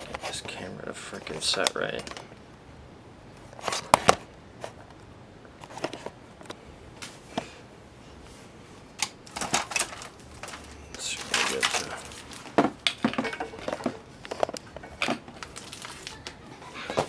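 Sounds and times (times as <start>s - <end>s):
camera handling clicks and knocks: 3.7s - 4.3s.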